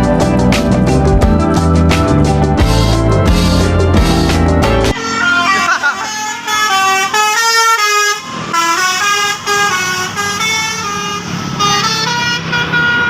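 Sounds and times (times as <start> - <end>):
bus engine rumble: 0.0 - 13.0
musical bus air horn: 2.7 - 13.0.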